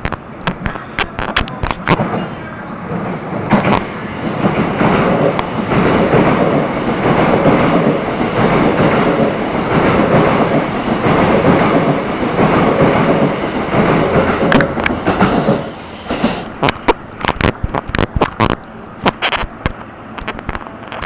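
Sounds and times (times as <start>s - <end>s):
train wheels rumbling on rails: 0.0s - 21.0s.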